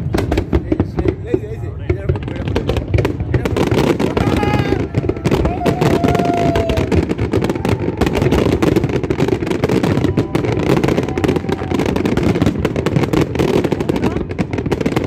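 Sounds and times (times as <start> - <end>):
fireworks crackling bangs: 0.0 - 15.0.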